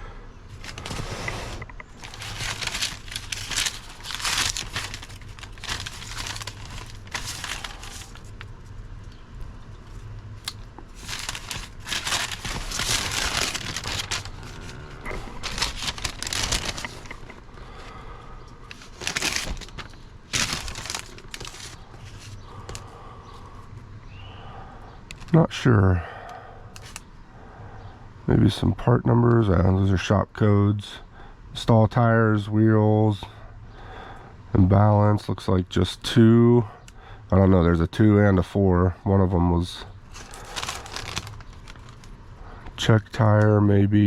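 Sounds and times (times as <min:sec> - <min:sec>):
paper rustling and crinkling: 0:00.5 - 0:09.1, 0:09.8 - 0:18.0, 0:18.6 - 0:23.0, 0:25.1 - 0:25.4, 0:40.1 - 0:42.9.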